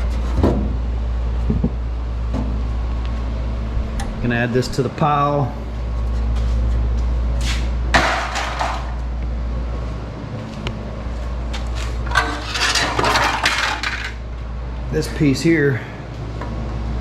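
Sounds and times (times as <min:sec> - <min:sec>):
steady low rumble: 0:00.0 - 0:17.0
metal pieces scraping and rattling: 0:08.0 - 0:09.0, 0:11.8 - 0:14.2
sheet metal clattering: 0:08.0 - 0:09.0, 0:12.0 - 0:14.2.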